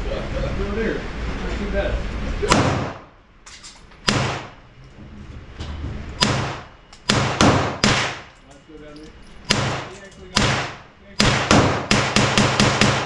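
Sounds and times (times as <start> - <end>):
gunshots with ringing tail: 6.2 - 8.3, 9.5 - 13.0.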